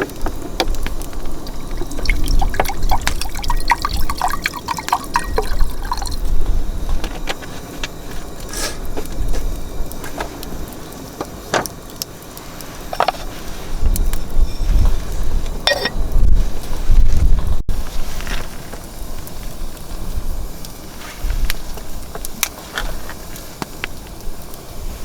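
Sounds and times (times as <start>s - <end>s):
wind rumble on microphone: 0.0s - 4.4s, 5.0s - 11.0s, 12.8s - 25.0s
liquid pouring and glugging: 0.3s - 6.8s.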